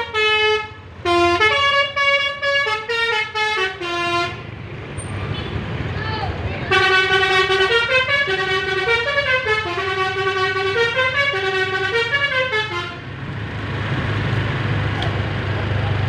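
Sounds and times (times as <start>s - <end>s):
bus horn playing a tune: 0.0s - 4.6s, 6.7s - 13.1s.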